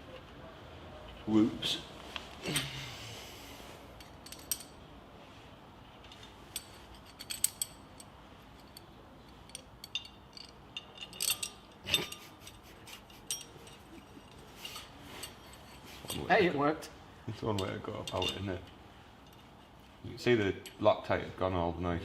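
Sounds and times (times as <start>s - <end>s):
hand tools clicking on metal: 6.0s - 16.3s.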